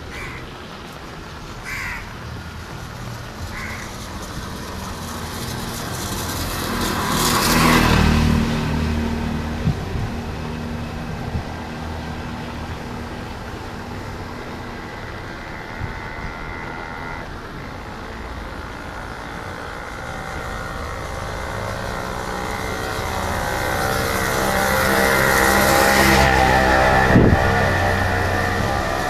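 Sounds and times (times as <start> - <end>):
vehicle passing by: 0.0 - 29.0.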